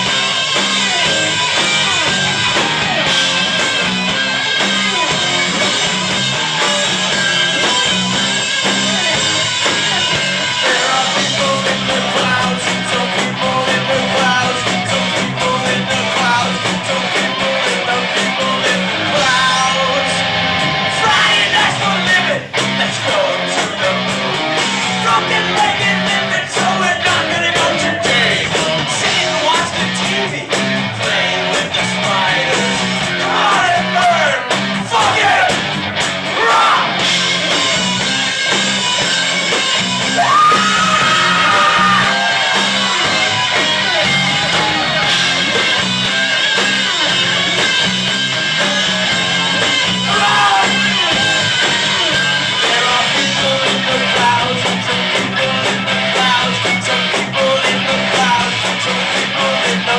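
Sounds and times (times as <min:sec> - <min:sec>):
bass guitar: 0:00.0 - 0:59.9
drums: 0:00.0 - 0:59.9
electric guitars: 0:00.0 - 0:59.9
shouted sung vocals: 0:09.8 - 0:35.7, 0:36.3 - 0:37.8, 0:39.9 - 0:45.6, 0:48.5 - 0:59.9.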